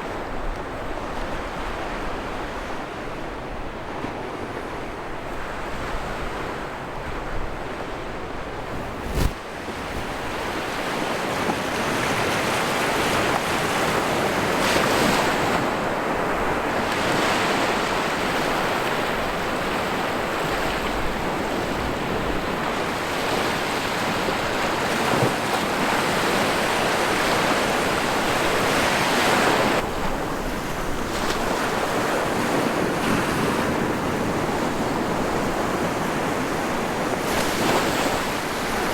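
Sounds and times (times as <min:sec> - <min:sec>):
wind rumbling on microphone: 0:07.1 - 0:12.0
sea waves washing onto beach: 0:08.6 - 0:38.9.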